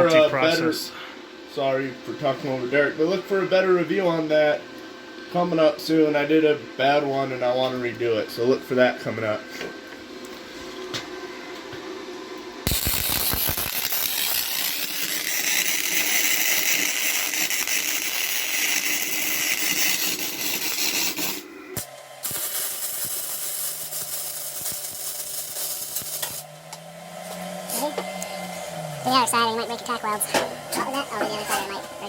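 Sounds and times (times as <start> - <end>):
welding arc crackling hiss: 12.6 - 26.5.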